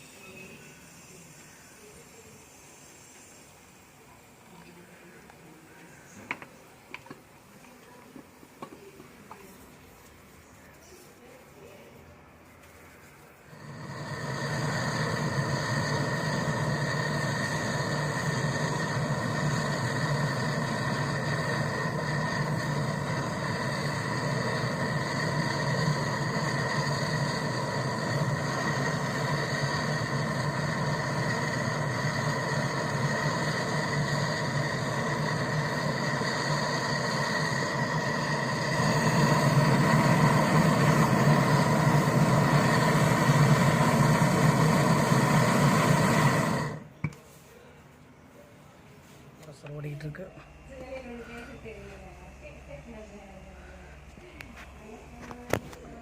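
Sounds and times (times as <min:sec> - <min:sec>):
refrigerator compressor hum: 0:13.5 - 0:47.0.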